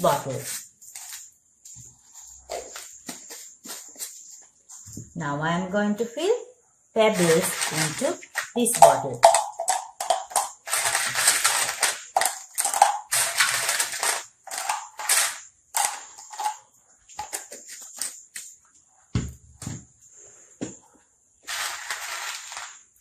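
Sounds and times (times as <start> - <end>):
pebbles poured into bottle: 7.1 - 18.2, 21.4 - 23.0.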